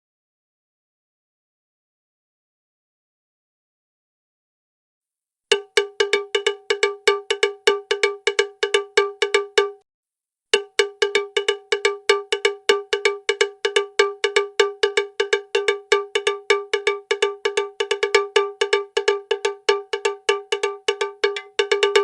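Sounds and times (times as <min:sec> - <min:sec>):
cowbell clanking: 0:05.5 - 0:09.8, 0:10.6 - 0:22.0.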